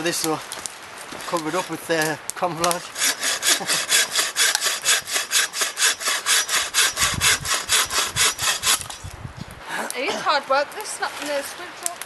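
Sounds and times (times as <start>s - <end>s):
hand saw cutting wood: 1.1s - 2.0s, 2.6s - 9.1s.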